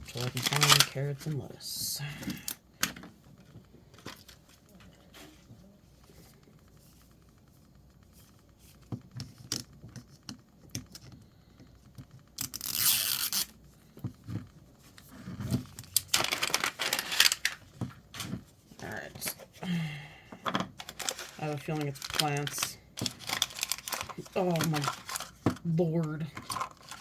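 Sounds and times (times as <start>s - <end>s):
plastic crinkling: 0.0s - 1.3s, 12.4s - 13.6s, 14.8s - 19.6s, 20.7s - 27.0s
plastic wrapping tearing: 0.1s - 1.0s, 12.4s - 13.6s, 15.8s - 17.6s, 20.8s - 25.4s.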